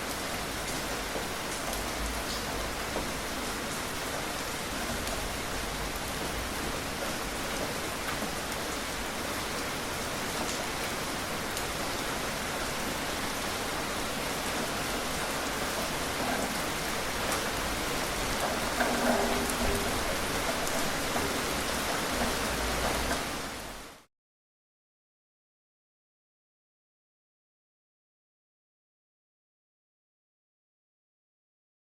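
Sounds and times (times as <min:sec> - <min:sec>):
steady rain falling: 0:00.0 - 0:24.1.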